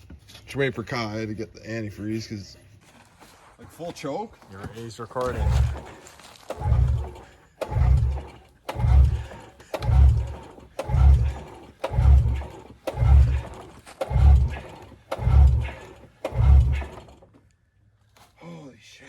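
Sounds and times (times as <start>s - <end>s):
engine turning over without firing: 5.1s - 17.5s
recoil starter snap: 5.2s - 17.4s.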